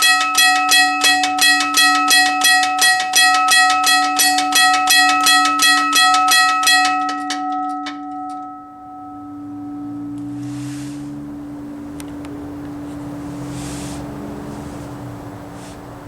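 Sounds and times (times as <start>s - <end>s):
railroad crossing bell ringing: 0.0s - 15.2s
steady low hum: 8.5s - 16.0s.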